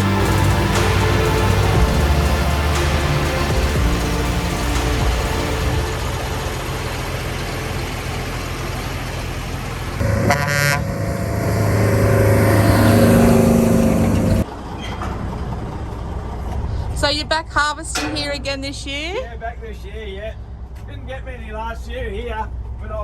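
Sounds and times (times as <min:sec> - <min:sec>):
heavy machinery engine running: 0:00.0 - 0:16.7.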